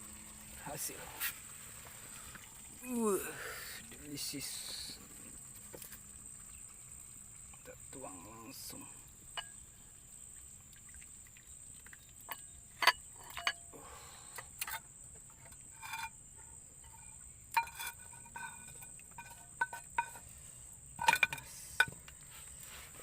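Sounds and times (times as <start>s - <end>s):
high-pitched insect drone: 0.0s - 10.4s
metal cookware clinking: 12.3s - 13.7s, 16.8s - 20.2s, 21.0s - 22.0s.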